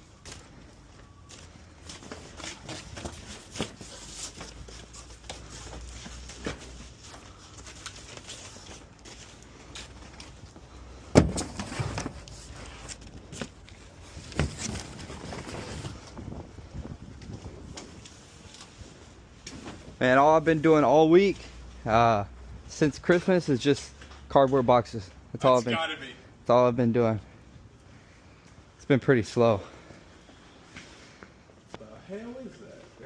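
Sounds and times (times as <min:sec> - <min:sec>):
cardboard boxes rustling and knocking: 0:11.0 - 0:16.2.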